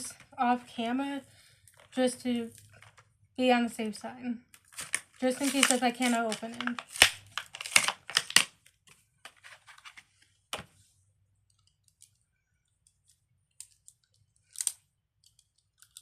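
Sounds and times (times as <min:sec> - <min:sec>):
scissors snipping plastic packaging: 0:04.6 - 0:08.6
plastic crinkling: 0:04.6 - 0:10.2.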